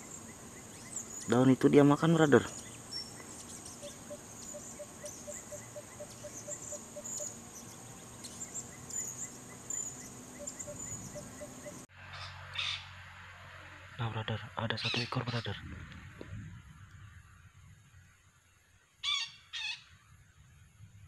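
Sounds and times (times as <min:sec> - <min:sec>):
insect chirps: 0:00.0 - 0:13.7
high-pitched insect drone: 0:02.5 - 0:11.9.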